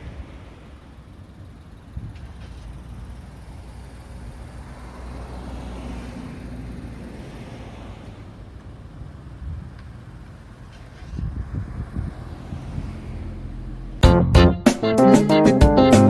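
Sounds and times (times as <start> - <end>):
wind rumble on microphone: 11.0 - 13.0
car driving past: 11.0 - 14.0.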